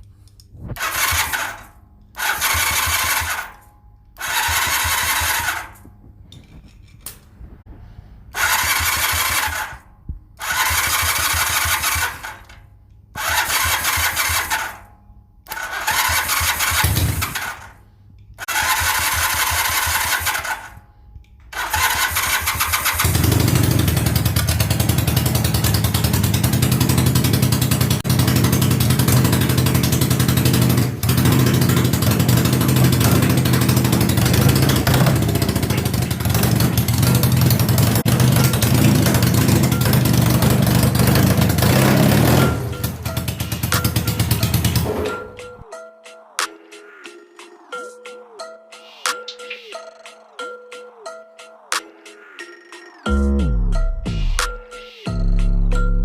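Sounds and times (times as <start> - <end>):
motorcycle engine cranking: 0.6 - 7.3, 8.4 - 17.8, 18.4 - 20.8, 21.4 - 45.6
motorcycle engine running: 2.2 - 3.5, 4.2 - 5.9, 8.4 - 9.8, 10.4 - 12.5, 15.5 - 17.7, 21.6 - 45.4.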